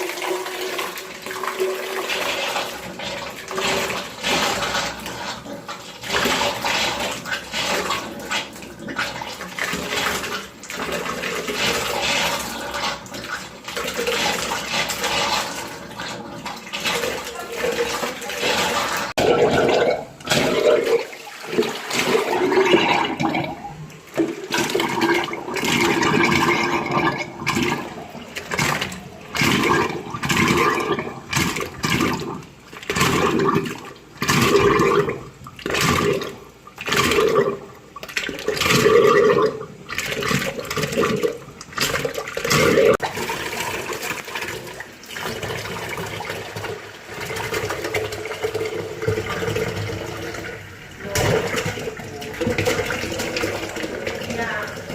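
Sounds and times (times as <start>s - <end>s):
water gushing from pipes: 0.0s - 54.9s.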